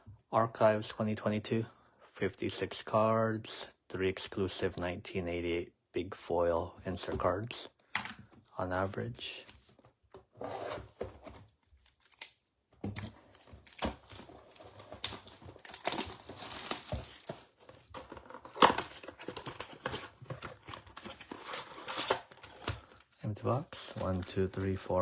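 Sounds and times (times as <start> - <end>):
shrink-wrap crinkling and tearing: 11.8 - 12.5, 13.2 - 23.0
foil packs and cardboard rustling: 13.1 - 23.0, 23.8 - 25.0.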